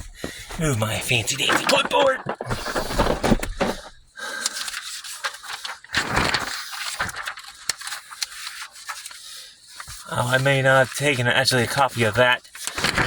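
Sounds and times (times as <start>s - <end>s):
papers rustling: 0.0s - 13.0s.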